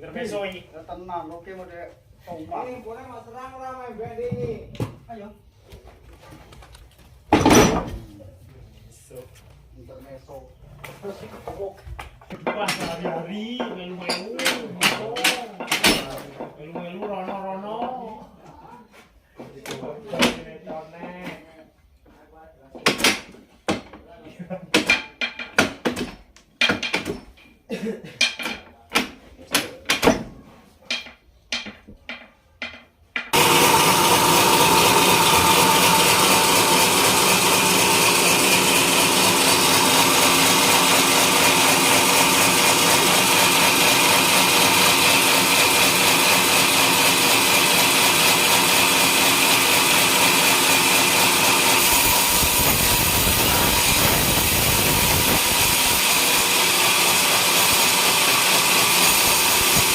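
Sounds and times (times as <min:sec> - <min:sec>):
sawmill saw whining through wood: 0:33.4 - 0:59.9.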